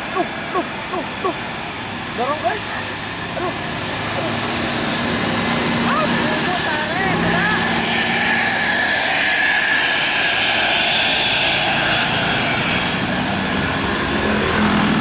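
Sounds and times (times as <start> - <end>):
deeper engine hum: 0.0 - 8.6
bus engine running hard: 0.0 - 15.0.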